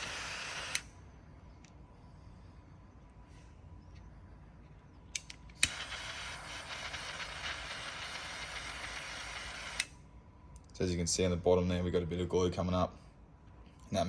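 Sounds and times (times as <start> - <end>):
torch igniter clicks: 0.5 - 0.9, 5.1 - 6.1
torch flame hissing: 5.6 - 9.9.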